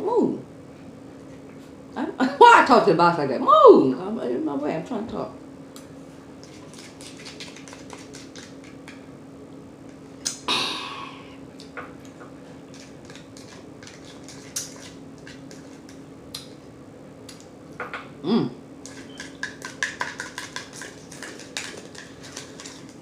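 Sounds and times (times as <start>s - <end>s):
steady low hum: 0.0s - 23.0s
wet mouth clicks and lip smacks: 16.3s - 16.5s.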